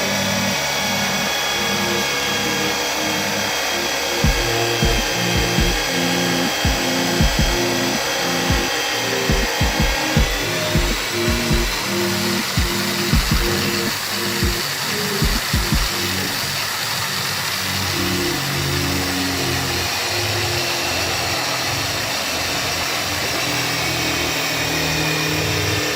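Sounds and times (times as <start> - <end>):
power tool whining: 0.0 - 25.9
background music with a beat: 4.0 - 16.4.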